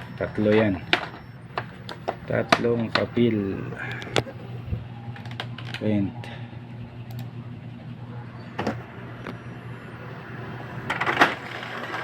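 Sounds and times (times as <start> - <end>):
printer motor humming: 0.0 - 12.0
printer mechanism noise burst: 8.5 - 9.4, 10.0 - 12.0.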